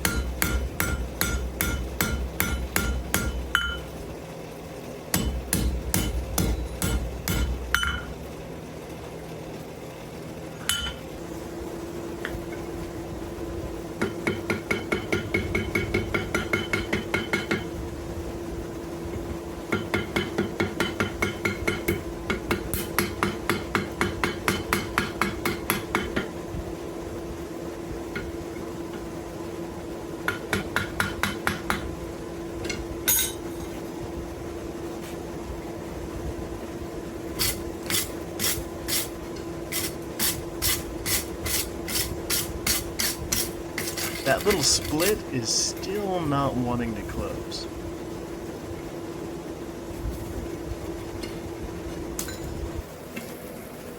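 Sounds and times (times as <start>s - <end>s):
hammer beating iron on anvil: 0.0s - 3.9s, 5.1s - 8.1s, 14.0s - 17.7s, 19.7s - 26.3s, 30.3s - 31.9s
steady hum: 0.0s - 53.9s.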